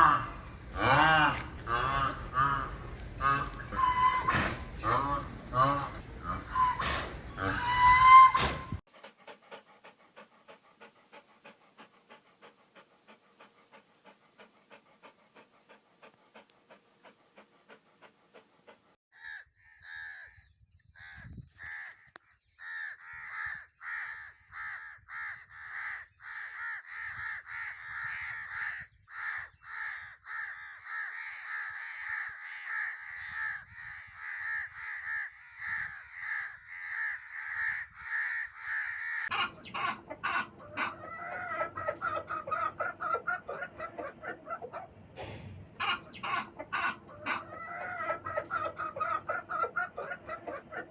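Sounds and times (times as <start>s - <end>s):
loud repeated bird calls: 17.4s - 44.8s, 45.8s - 50.9s.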